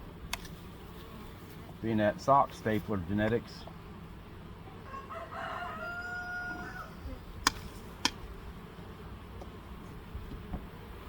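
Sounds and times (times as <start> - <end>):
rooster crowing: 4.8 - 7.1.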